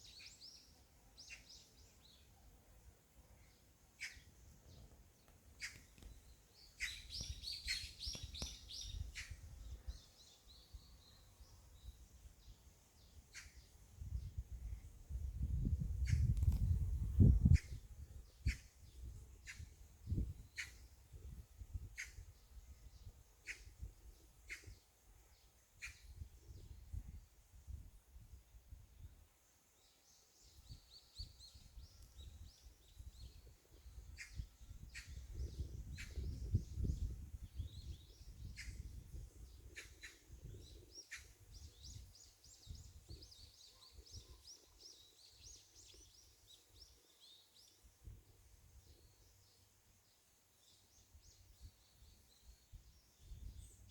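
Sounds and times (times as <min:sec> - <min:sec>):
small birds twittering: 0:00.0 - 0:02.6, 0:03.3 - 0:14.8, 0:15.7 - 0:21.2, 0:29.8 - 0:48.2.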